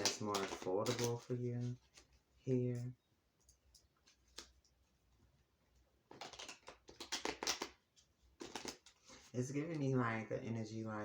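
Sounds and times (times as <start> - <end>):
cards being shuffled: 0.0 - 2.1, 6.1 - 9.8.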